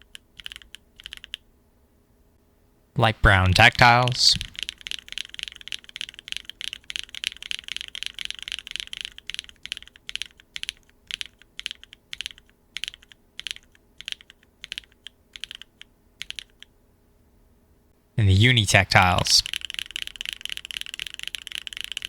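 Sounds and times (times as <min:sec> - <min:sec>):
mechanical keyboard typing: 0:00.0 - 0:01.4, 0:04.4 - 0:16.7, 0:19.4 - 0:22.0.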